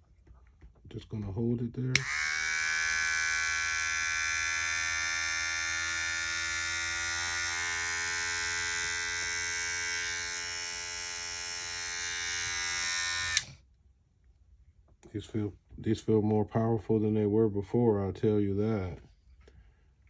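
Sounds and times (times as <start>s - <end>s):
hair clipper buzzing: 1.9s - 13.6s.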